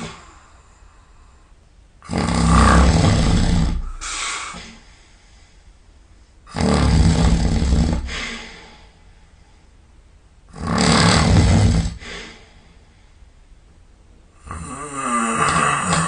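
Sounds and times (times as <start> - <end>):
man snoring loudly: 2.0 - 3.9, 6.5 - 8.1, 10.5 - 12.0, 14.4 - 16.0.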